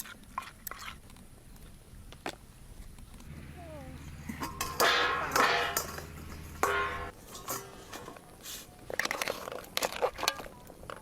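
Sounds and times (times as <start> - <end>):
low steady hum: 3.2 - 7.7.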